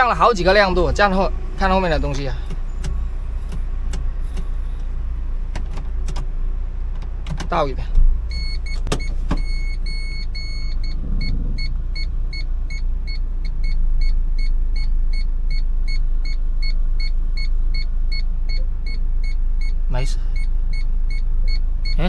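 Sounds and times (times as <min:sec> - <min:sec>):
car engine humming: 0:00.0 - 0:22.0
parking sensor beeping: 0:08.3 - 0:19.8, 0:20.4 - 0:22.0.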